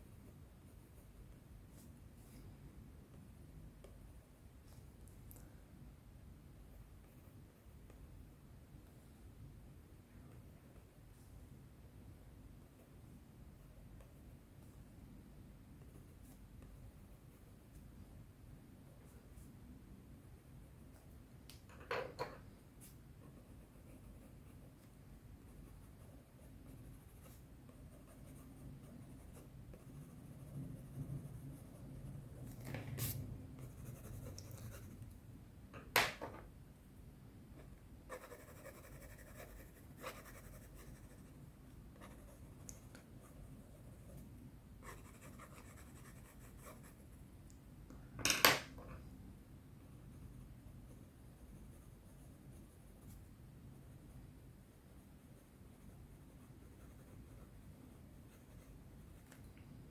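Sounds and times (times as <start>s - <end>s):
pencil scratching on paper: 22.8s - 35.0s, 38.1s - 41.4s, 42.0s - 47.1s, 54.8s - 59.3s.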